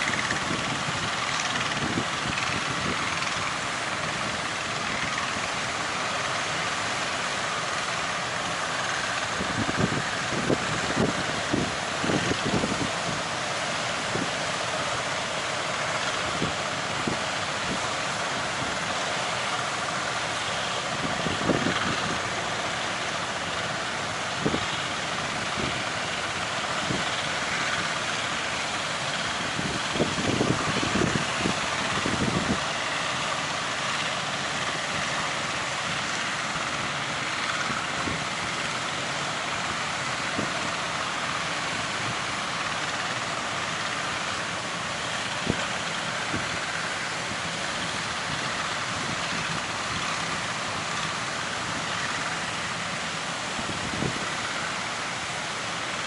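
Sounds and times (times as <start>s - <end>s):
wind buffeting microphone: 0.0s - 5.5s, 8.8s - 14.9s, 20.2s - 23.6s, 29.1s - 38.6s, 53.5s - 54.7s
rushing surf: 0.0s - 56.0s.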